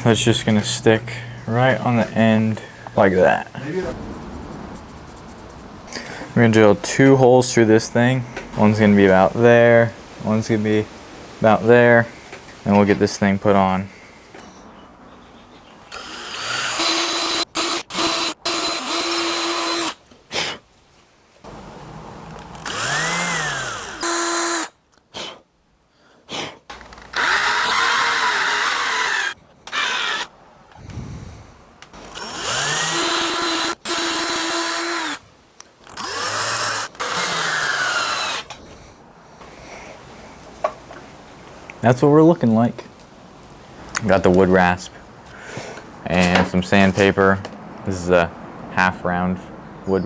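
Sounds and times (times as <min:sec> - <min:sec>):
electric drill boring wood: 0:15.9 - 0:20.0, 0:22.6 - 0:24.7, 0:26.9 - 0:30.3, 0:32.0 - 0:35.2, 0:35.9 - 0:38.5.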